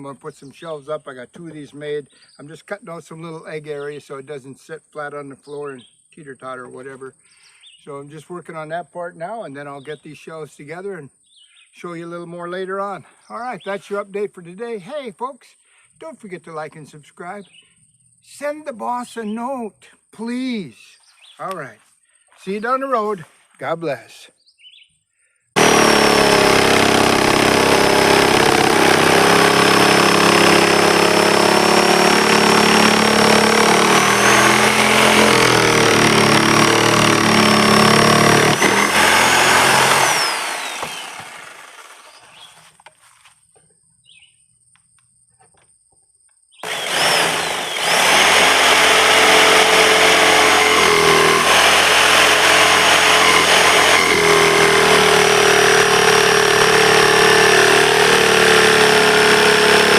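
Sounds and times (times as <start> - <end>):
power tool motor whining: 25.6 - 42.6, 46.6 - 59.9.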